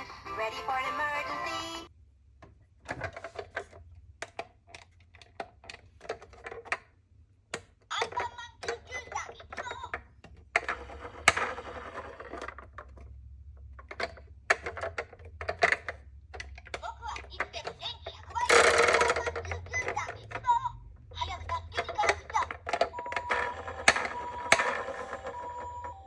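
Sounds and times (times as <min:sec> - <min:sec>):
toy cars clattering: 0:07.9 - 0:26.0.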